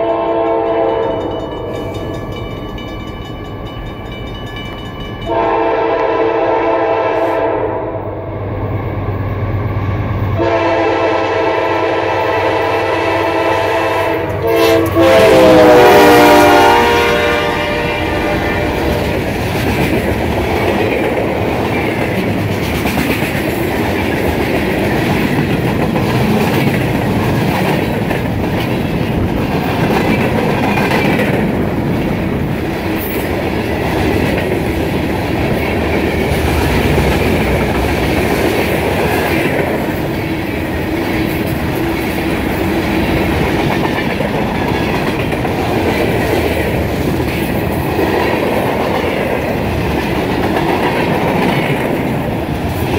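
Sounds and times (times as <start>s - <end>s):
freight train wheels clattering: 16.1s - 52.9s.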